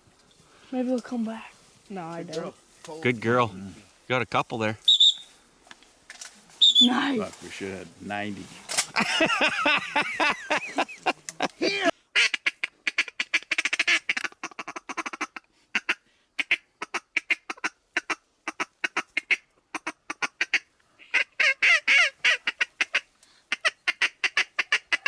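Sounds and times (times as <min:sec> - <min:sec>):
honking bird calls: 0:04.9 - 0:05.3, 0:06.6 - 0:07.0
waterfowl quacking: 0:12.2 - 0:25.0.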